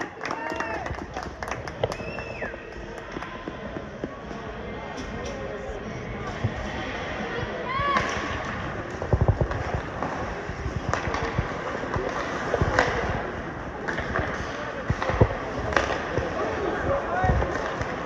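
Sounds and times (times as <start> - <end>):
hockey sticks and puck clacking: 0.0 - 5.6, 6.2 - 18.0
arena noise: 0.0 - 18.0
low thuds: 7.8 - 18.0.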